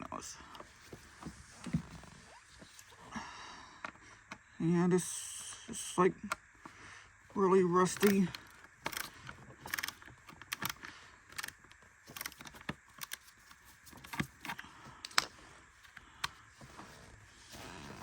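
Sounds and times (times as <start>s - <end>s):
plastic parts being handled: 7.8s - 18.0s
screwdriver clicking on screw: 7.9s - 9.1s.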